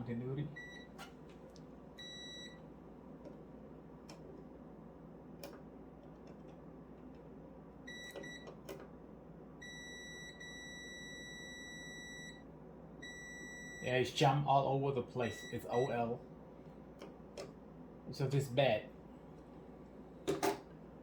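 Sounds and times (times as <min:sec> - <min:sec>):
multimeter continuity beeps: 0:00.5 - 0:01.0, 0:02.0 - 0:02.6, 0:07.9 - 0:08.6, 0:09.6 - 0:14.1, 0:15.2 - 0:16.1.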